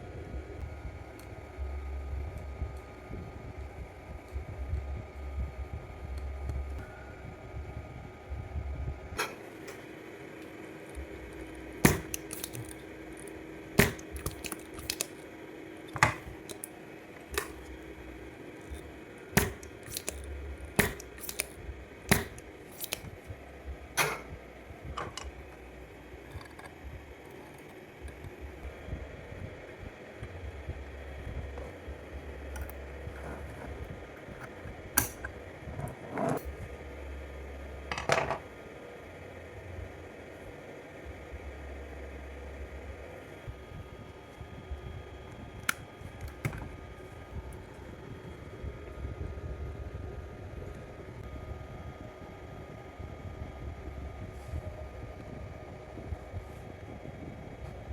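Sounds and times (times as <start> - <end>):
steady low hum: 0.0 - 57.9
clicks and knocks of small objects: 11.8 - 12.8, 13.8 - 15.2, 19.4 - 23.1.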